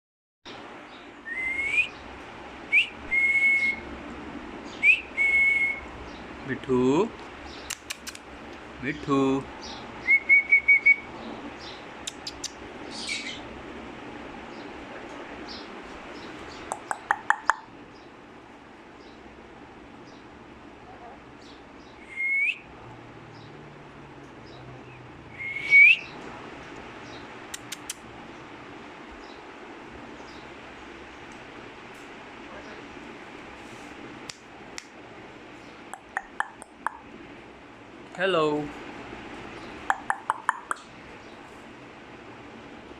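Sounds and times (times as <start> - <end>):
bird whistling and chirping: 1.2 - 2.0, 2.7 - 3.8, 4.7 - 5.9, 10.0 - 11.1, 21.9 - 22.6, 25.4 - 26.2
quick sharp clicks: 7.6 - 8.3, 12.1 - 12.6, 27.5 - 28.0.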